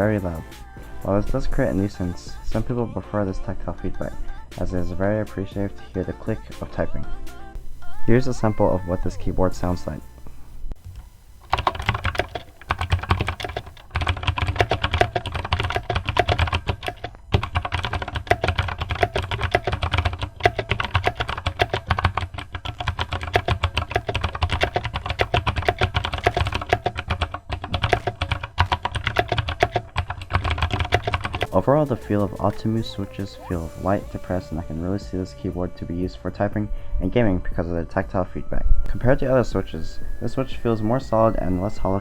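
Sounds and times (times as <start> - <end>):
fast typing on mechanical keyboard: 11.4 - 33.4.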